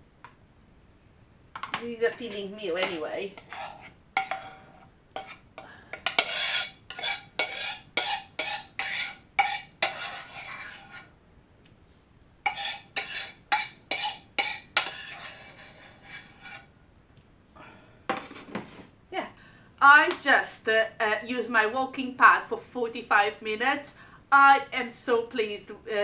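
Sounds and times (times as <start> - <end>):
utensil scraping a pan: 1.6 - 11.1, 12.5 - 16.7.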